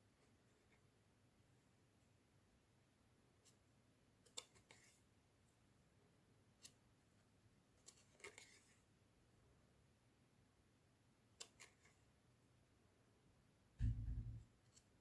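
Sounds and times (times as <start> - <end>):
paper items clicking and rustling: 7.8 - 8.8.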